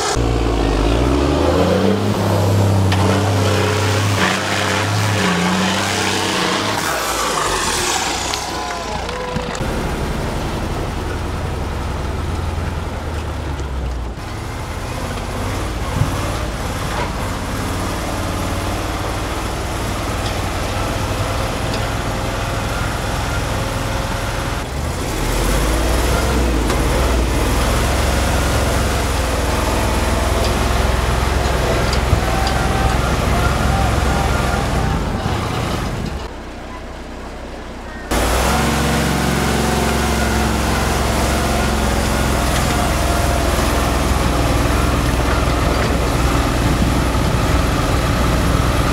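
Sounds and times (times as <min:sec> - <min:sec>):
truck diesel engine under load: 0:00.0 - 0:48.9.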